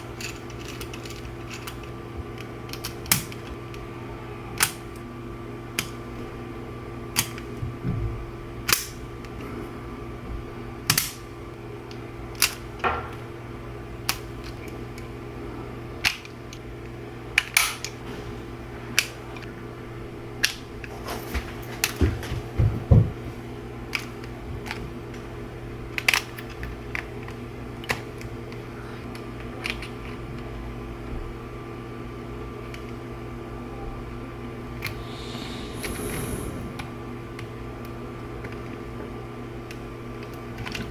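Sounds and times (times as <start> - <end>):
steady low hum: 34.7 - 38.1.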